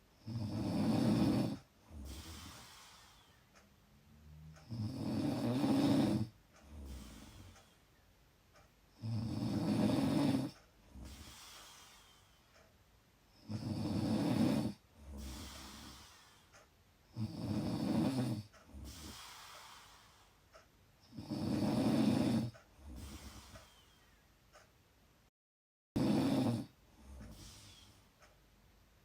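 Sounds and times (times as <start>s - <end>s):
deep rattling snores: 0.2s - 7.8s, 9.0s - 12.7s, 13.4s - 24.0s, 26.0s - 28.0s
soft breathy exhale: 2.0s - 3.5s, 11.0s - 12.6s, 18.8s - 20.4s, 22.9s - 24.1s, 27.1s - 28.1s.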